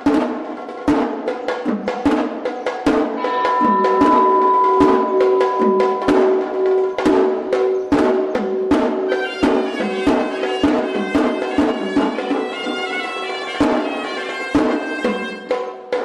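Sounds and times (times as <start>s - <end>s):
drums struck in steady rhythm: 0.0s - 16.0s
shawm playing reedy melody: 3.2s - 15.8s.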